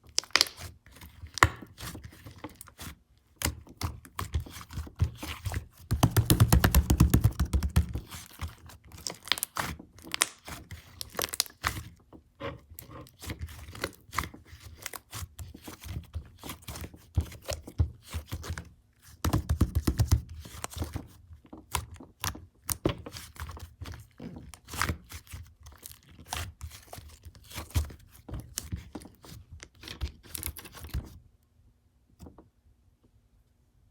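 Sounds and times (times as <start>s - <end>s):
slime squishing and crackling: 0.0s - 11.9s.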